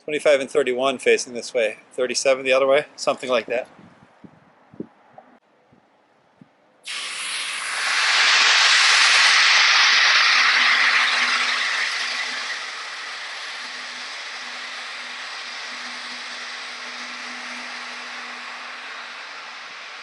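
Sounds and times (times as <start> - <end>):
compressed air hissing through horn: 6.9 - 20.0
faint low wavering tone: 11.2 - 20.0.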